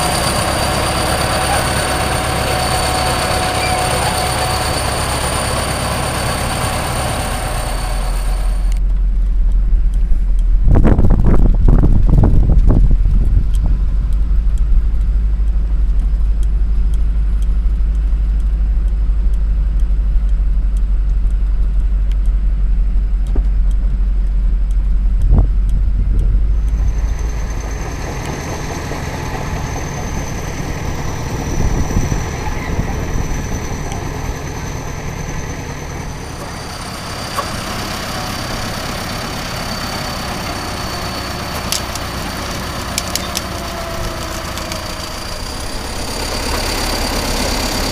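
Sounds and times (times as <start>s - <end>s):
high turbo whistle: 0.0s - 8.8s, 26.6s - 47.9s
diesel engine rumbling: 0.0s - 47.9s.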